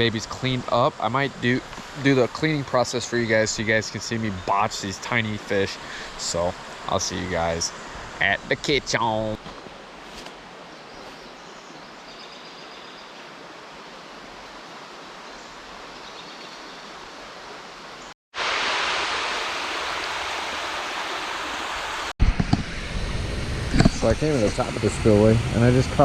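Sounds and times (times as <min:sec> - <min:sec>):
water rushing down spillway: 0:18.4 - 0:22.1.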